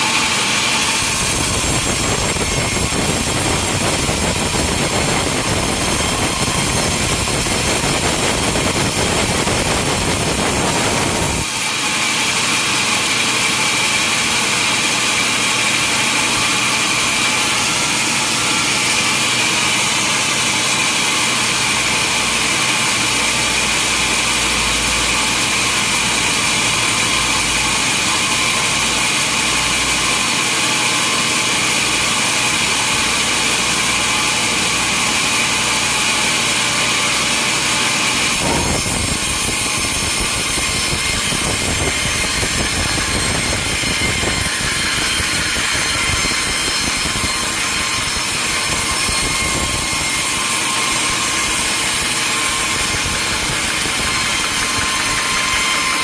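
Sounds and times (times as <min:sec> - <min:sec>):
steady high whine: 0:00.0 - 0:20.8
sawmill machinery running: 0:00.0 - 0:56.0.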